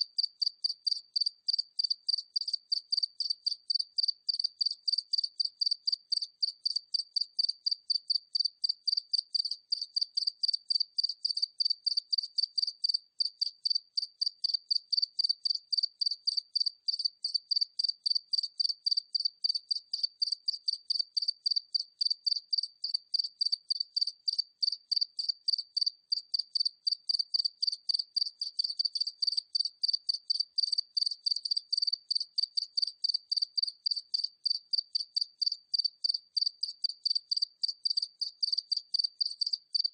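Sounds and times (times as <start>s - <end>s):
cricket chirping: 0.0s - 39.9s.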